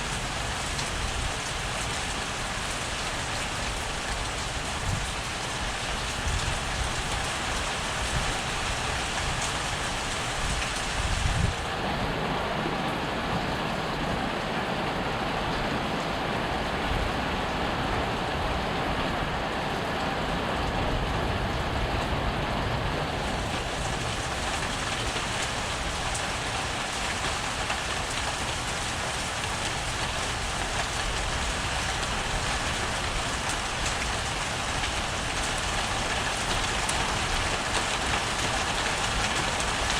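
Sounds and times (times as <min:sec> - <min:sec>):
heavy rain pouring: 0:00.0 - 0:39.9.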